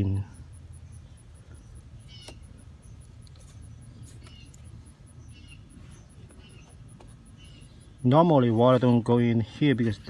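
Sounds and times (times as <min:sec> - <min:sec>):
small animals chirping: 0:00.4 - 0:08.2.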